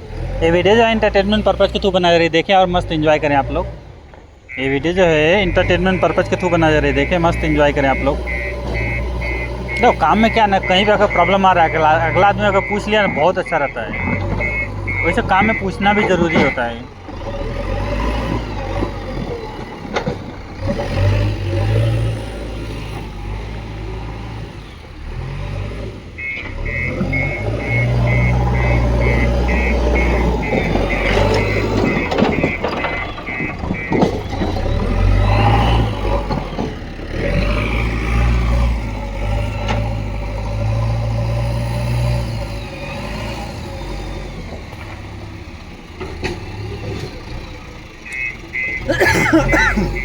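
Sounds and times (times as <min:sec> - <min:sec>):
diesel engine working: 0:00.0 - 0:50.0
reversing alarm beeping: 0:04.4 - 0:20.0, 0:26.2 - 0:36.7, 0:47.8 - 0:50.0.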